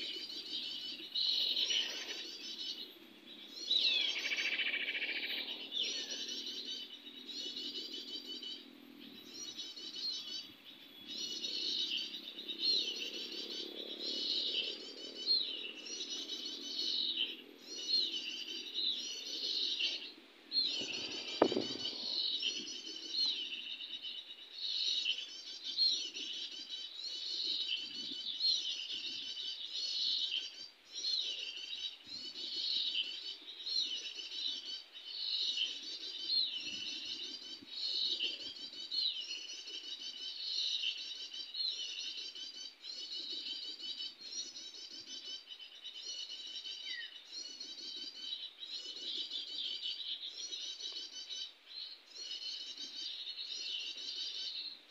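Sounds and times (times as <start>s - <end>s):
songbirds chirping: 0.0s - 54.9s
sharp knock: 21.4s - 22.0s.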